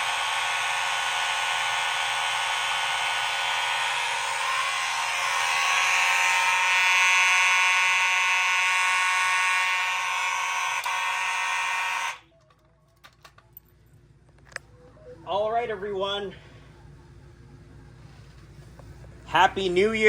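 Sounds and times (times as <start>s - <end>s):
fire alarm horns blaring: 0.0s - 12.3s.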